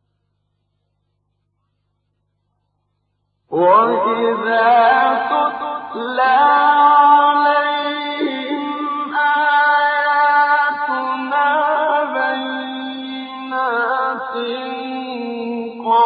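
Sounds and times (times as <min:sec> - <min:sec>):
man chanting: 0:03.5 - 0:16.0.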